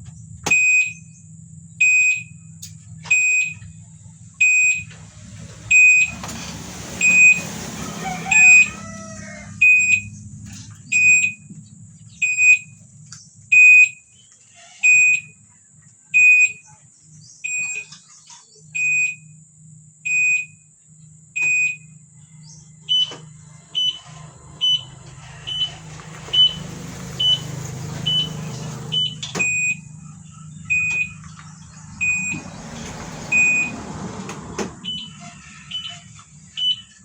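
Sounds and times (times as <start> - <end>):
electronic buzzer beeping: 34.8 - 36.9.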